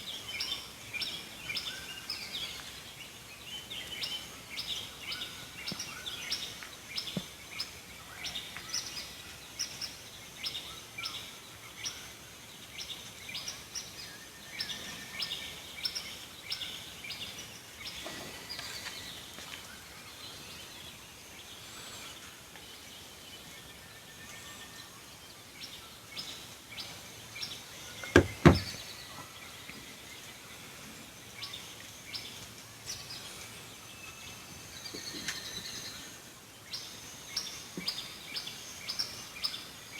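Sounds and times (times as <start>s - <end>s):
birds chirping: 28.0s - 28.8s
sharp loud knocks: 28.1s - 28.8s.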